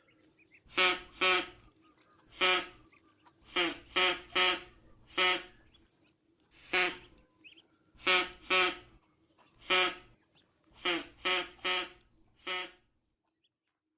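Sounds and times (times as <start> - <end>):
duck quacking: 0.6 - 5.7, 6.6 - 7.2, 8.0 - 9.0, 9.6 - 10.2, 10.8 - 12.8.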